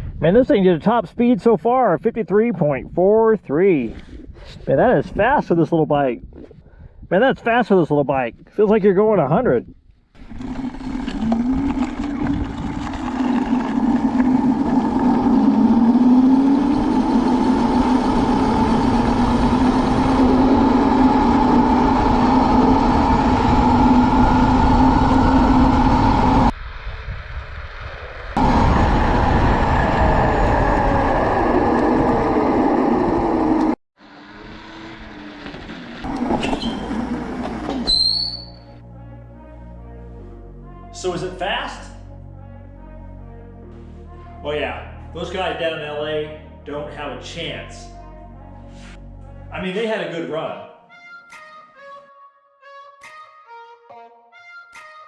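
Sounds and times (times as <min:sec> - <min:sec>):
electric motor whining: 0:10.2 - 0:26.5
low rushing noise: 0:13.4 - 0:33.8.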